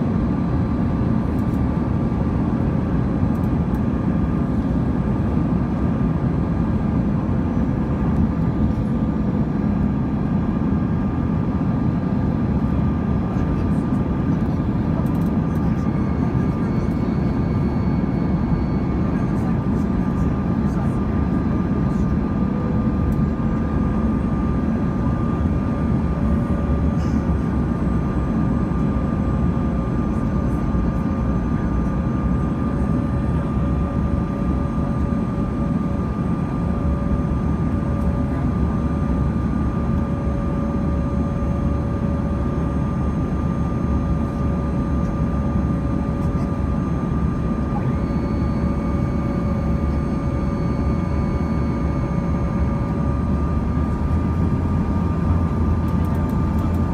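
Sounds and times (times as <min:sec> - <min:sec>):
airplane cabin engine hum: 0:00.0 - 0:56.9
steady whine: 0:00.0 - 0:56.9.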